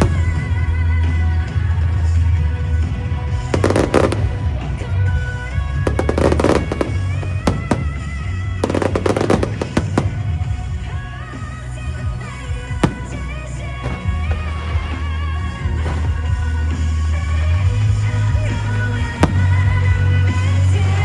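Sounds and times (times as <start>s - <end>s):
fireworks crackling bangs: 0.0s - 0.8s, 3.4s - 5.0s, 5.8s - 11.0s, 12.1s - 15.0s, 18.2s - 20.7s
loud music with steady bass: 0.0s - 21.0s.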